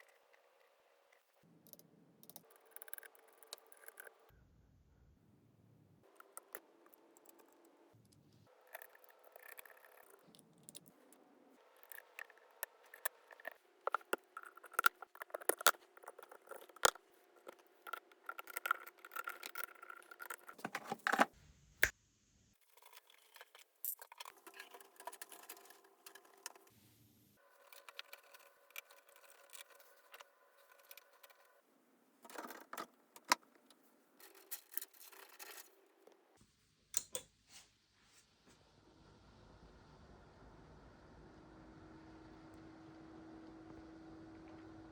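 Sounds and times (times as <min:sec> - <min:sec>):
small hard parts clicking and rattling: 0:00.0 - 0:04.2, 0:06.1 - 0:21.3, 0:22.6 - 0:26.7, 0:27.4 - 0:31.6, 0:32.2 - 0:36.2.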